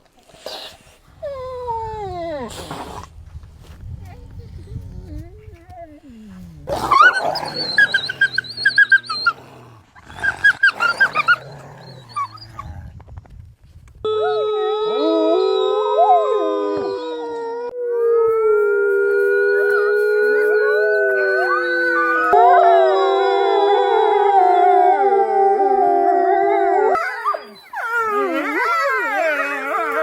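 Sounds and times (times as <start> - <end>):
wolves howling in chorus: 6.7 - 12.7, 18.6 - 30.0.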